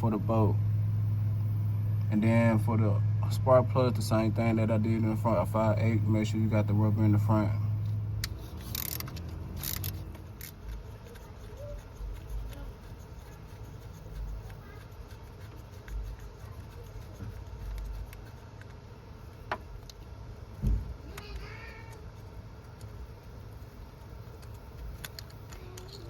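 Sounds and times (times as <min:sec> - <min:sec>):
ratchet clicks and knocks: 0:08.2 - 0:12.7.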